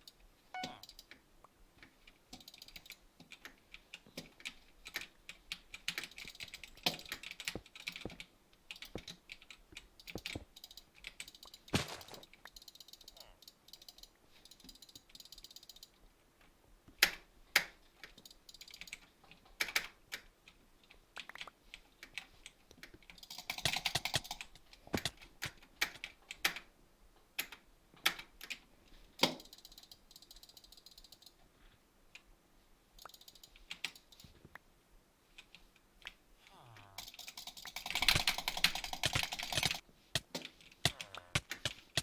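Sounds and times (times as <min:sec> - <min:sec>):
sharp clicks: 0:22.9 - 0:26.6, 0:36.8 - 0:42.0.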